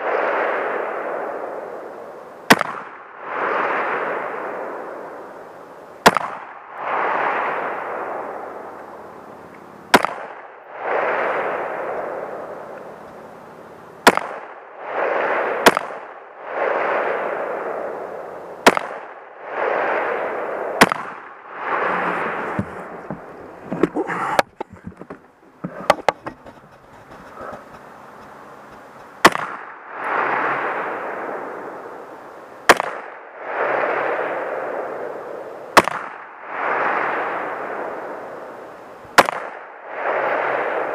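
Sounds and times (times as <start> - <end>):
rifle shots with echo: 0.0 - 4.8, 6.0 - 8.6, 9.9 - 12.7, 14.0 - 21.8, 29.2 - 31.7, 32.7 - 35.2, 35.8 - 36.4, 39.2 - 40.9
sharp clicks and knocks: 22.6 - 29.2.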